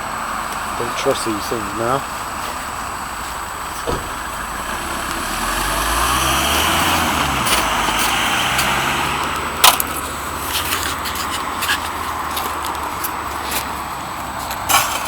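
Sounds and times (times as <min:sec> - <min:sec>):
vehicle passing on road: 0:00.0 - 0:15.0.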